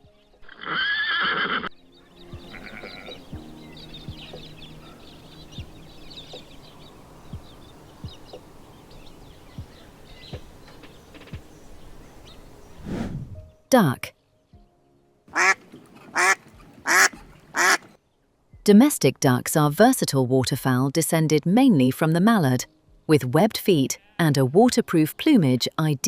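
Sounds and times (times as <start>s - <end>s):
pony whinnying: 0.5s - 1.7s, 2.5s - 3.2s.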